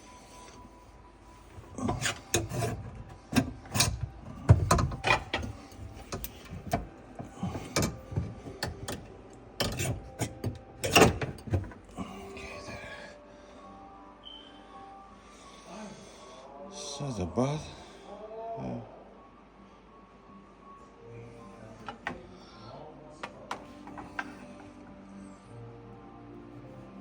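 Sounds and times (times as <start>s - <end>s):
dishwasher parts knocking and scraping: 1.5s - 11.9s, 21.8s - 22.2s, 23.2s - 24.7s.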